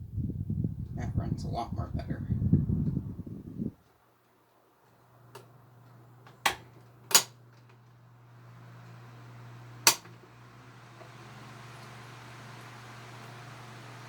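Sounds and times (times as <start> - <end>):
rush of air from fan: 0.0 - 3.8, 8.1 - 14.0
electric fan motor hum: 0.0 - 14.0
sharp clicks: 9.9 - 10.1.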